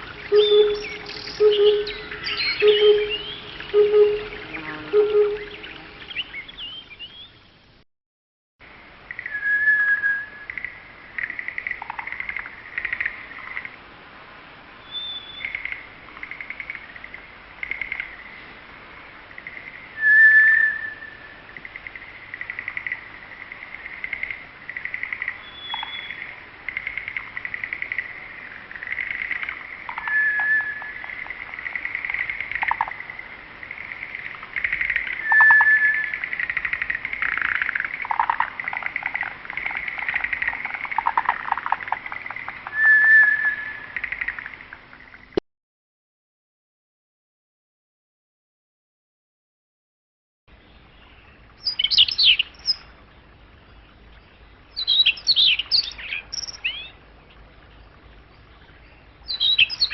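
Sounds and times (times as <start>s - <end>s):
rapid chirping trills: 0.0s - 6.9s, 21.7s - 44.7s, 54.8s - 56.9s
whistled bird song: 0.0s - 7.5s, 9.1s - 10.6s, 14.8s - 15.7s, 20.0s - 21.5s, 25.4s - 26.3s, 29.9s - 31.2s, 34.2s - 36.6s, 42.6s - 44.5s, 51.0s - 52.9s, 54.7s - 57.0s, 58.4s - 59.9s.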